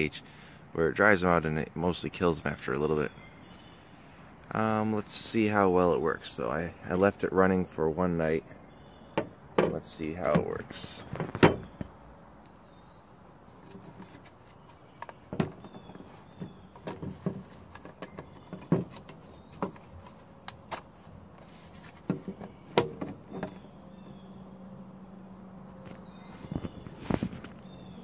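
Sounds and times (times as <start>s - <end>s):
clicks and knocks of handling: 13.6s - 23.7s.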